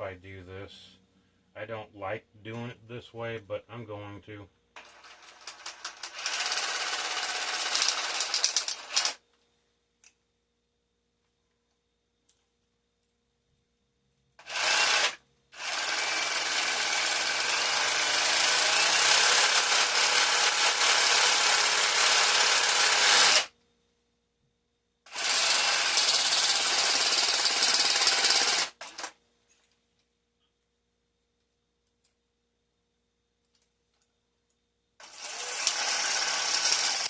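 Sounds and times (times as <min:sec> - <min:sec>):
power tool on metal: 0:14.4 - 0:23.5, 0:35.0 - 0:37.0.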